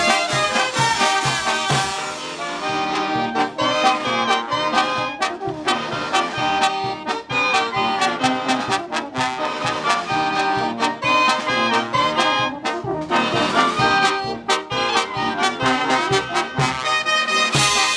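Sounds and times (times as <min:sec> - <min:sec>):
drum and cymbal beat: 0:00.0 - 0:03.0, 0:16.2 - 0:17.9
trumpets and trombones playing: 0:00.0 - 0:17.9.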